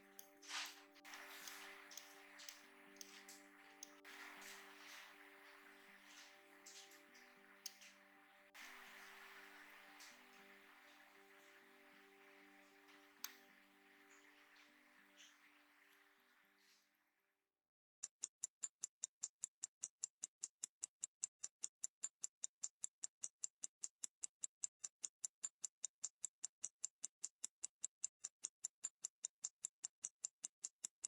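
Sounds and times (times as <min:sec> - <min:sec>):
wristwatch ticking: 0:00.0 - 0:15.3.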